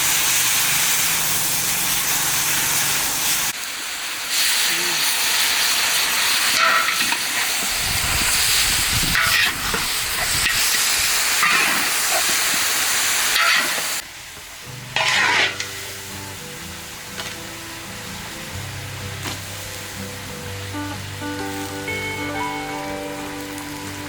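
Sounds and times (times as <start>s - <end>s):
food sizzling in a pan: 0.0s - 24.0s
soft background music: 14.6s - 24.0s
utensil scraping a pan: 15.0s - 15.7s.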